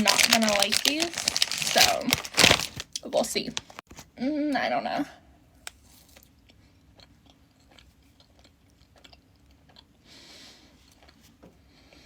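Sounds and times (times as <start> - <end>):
soft chewing: 5.7 - 12.0.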